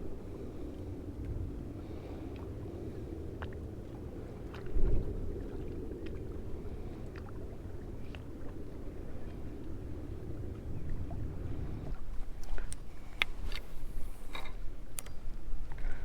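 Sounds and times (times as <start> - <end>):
wind rumbling on microphone: 0.0 - 16.0.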